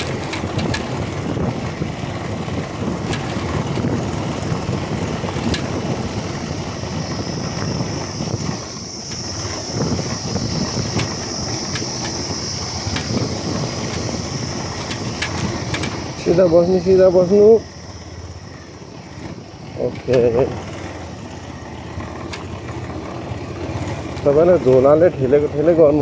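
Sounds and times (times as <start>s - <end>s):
wind noise: 0.0s - 24.0s
motorcycle engine rumble: 0.0s - 26.0s.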